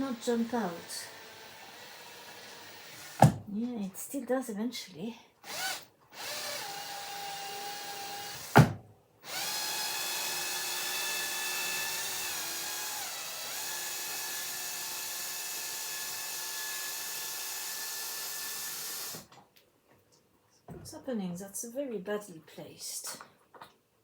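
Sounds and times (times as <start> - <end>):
cordless drill motor whining: 0.0 - 3.3, 5.4 - 8.6, 9.2 - 19.3.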